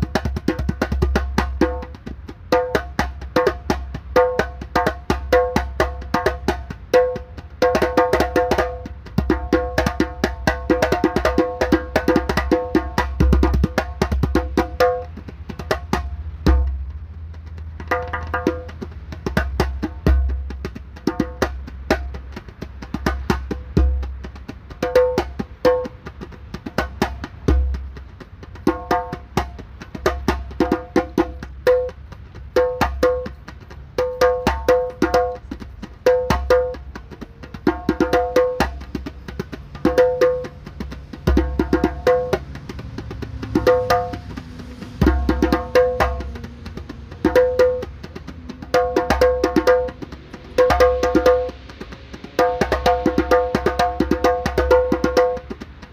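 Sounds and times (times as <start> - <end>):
djembe slaps and bass strokes: 0.0 - 55.9.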